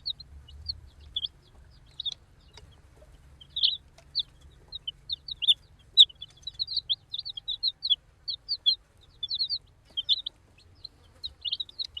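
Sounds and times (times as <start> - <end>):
baby chicks peeping: 0.0 - 12.0.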